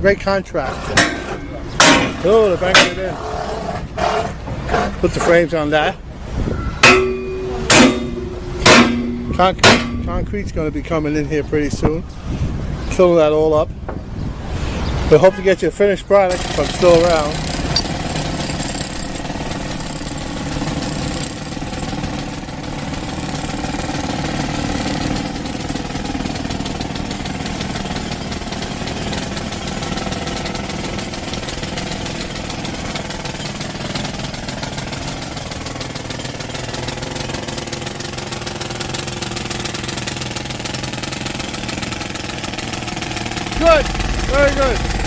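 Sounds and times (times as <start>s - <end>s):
street and work-site noise: 0.0s - 45.0s
engine running steadily: 6.0s - 10.8s, 16.3s - 45.0s.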